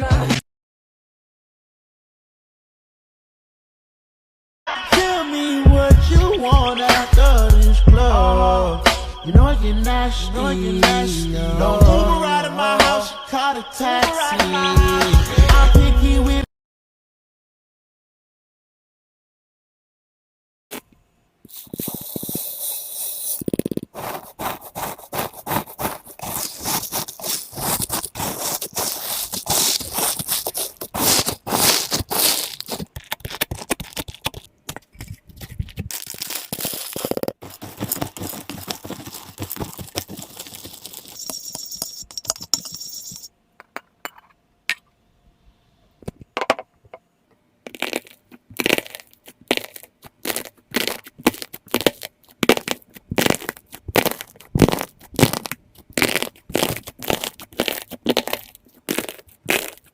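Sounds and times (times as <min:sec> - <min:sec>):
slime crackling and popping: 0:23.4 - 0:41.1, 0:47.7 - 0:59.9.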